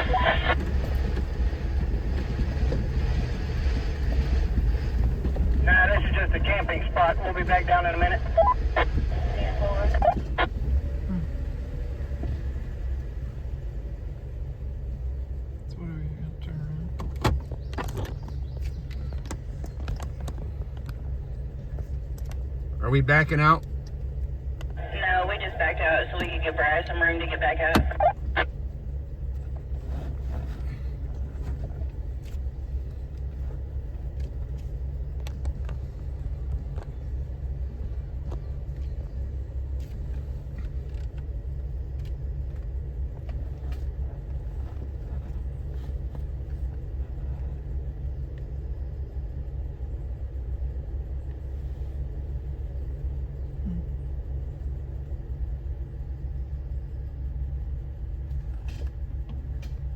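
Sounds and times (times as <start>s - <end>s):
off-road vehicle rumbling: 0.0s - 59.9s.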